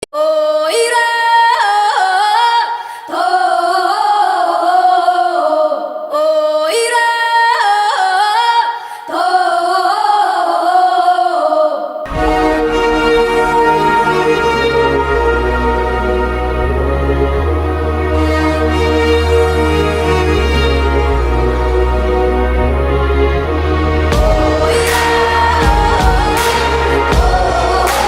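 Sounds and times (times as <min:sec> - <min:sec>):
music accompaniment with bass: 0:12.1 - 0:28.0
person singing melody: 0:12.1 - 0:28.0.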